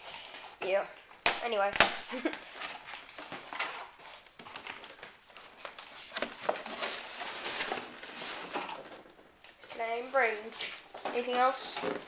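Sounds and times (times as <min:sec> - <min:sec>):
packaging crinkling and rustling: 0:00.0 - 0:09.6.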